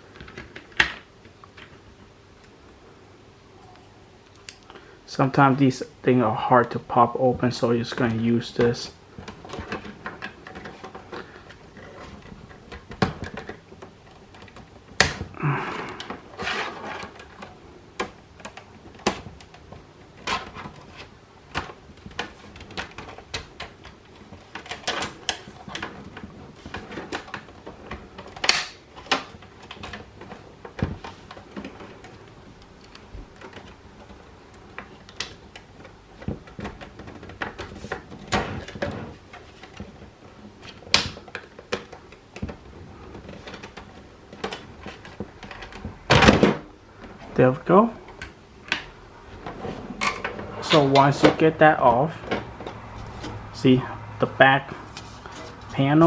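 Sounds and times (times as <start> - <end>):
plastic clips snapping: 28.2 - 31.6.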